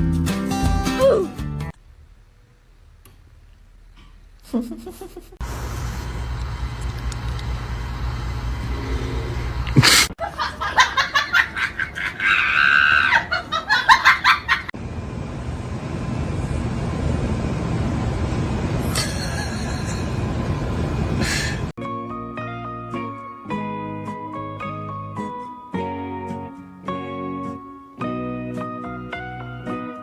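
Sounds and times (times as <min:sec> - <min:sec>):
person laughing hard: 0:04.5 - 0:05.4, 0:09.7 - 0:14.7.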